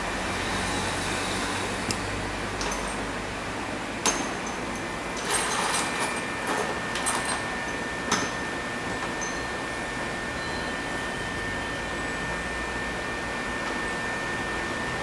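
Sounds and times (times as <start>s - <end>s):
metal tools clinking and tapping: 2.6s - 3.1s, 4.0s - 8.4s, 9.0s - 9.4s.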